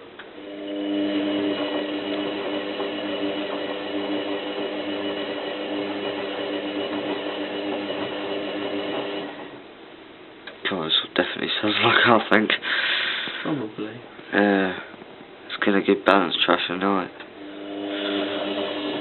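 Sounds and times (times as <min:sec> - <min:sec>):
washing machine motor humming: 0:00.0 - 0:10.0, 0:17.2 - 0:19.0.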